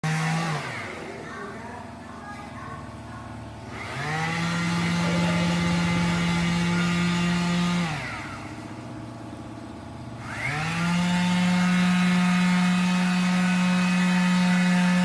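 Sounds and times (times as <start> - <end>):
small electric motor spinning: 3.7 - 8.9, 10.2 - 15.0.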